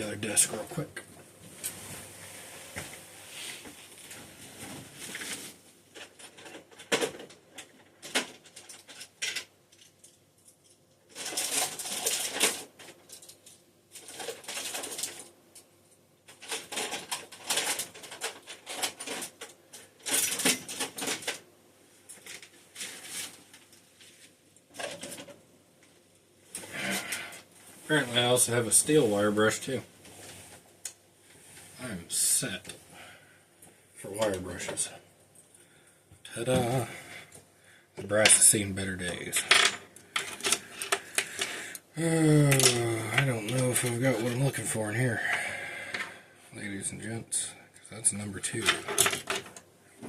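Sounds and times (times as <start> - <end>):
tools rattling in a drawer: 6.0 - 15.3, 16.3 - 21.4, 48.6 - 49.6.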